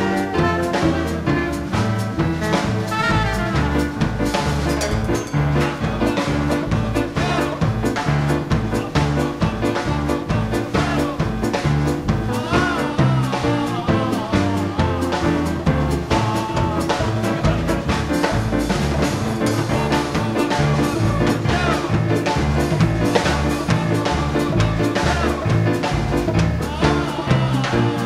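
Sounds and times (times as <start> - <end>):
latin dance band playing: 0.0 - 28.0.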